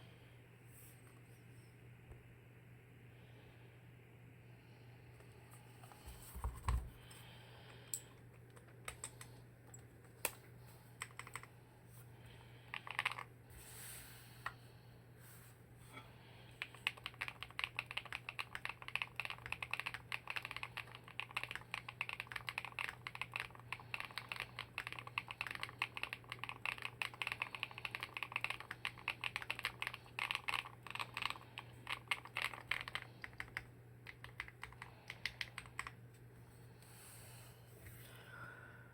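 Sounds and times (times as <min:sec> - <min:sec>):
faint low hum: 0:00.0 - 0:38.9
mechanical keyboard typing: 0:11.0 - 0:11.5, 0:12.7 - 0:13.3, 0:16.6 - 0:36.0.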